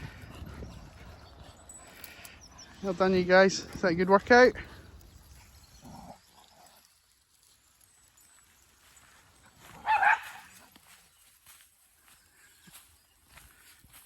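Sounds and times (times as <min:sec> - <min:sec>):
small dog barking: 0:09.8 - 0:10.5.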